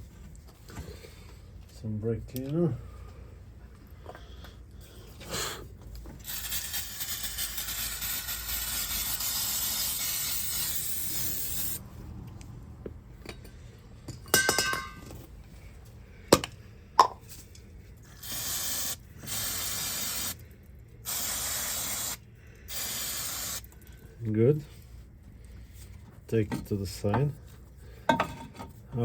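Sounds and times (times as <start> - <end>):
aerosol spray hissing: 6.2 - 11.8, 18.2 - 20.4, 21.0 - 23.7.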